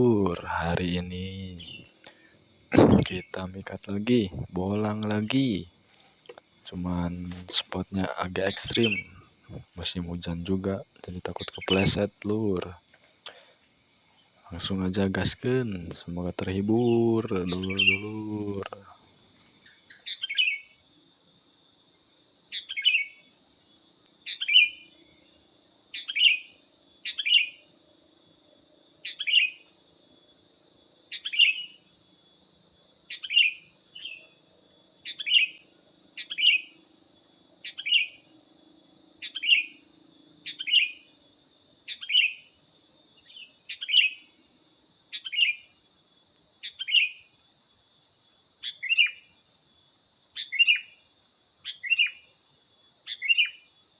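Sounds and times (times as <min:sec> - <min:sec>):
high-pitched insect drone: 0:00.0 - 0:53.9.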